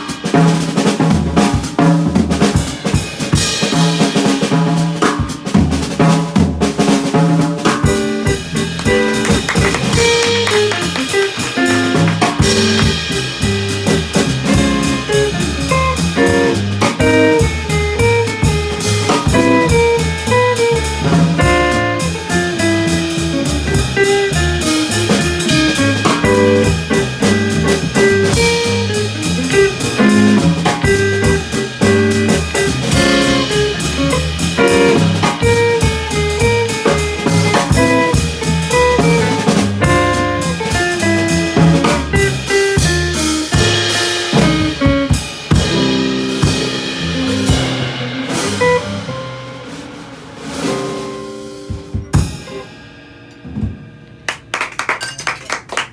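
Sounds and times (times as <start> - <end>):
jazz guitar: 0.0 - 55.6
drum kit: 0.0 - 55.9
steadily moving bass line: 7.6 - 50.2.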